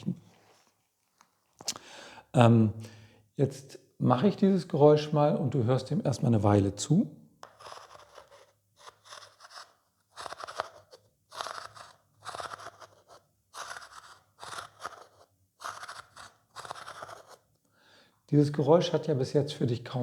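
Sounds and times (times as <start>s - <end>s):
gourd scraping against vase: 7.4s - 17.4s.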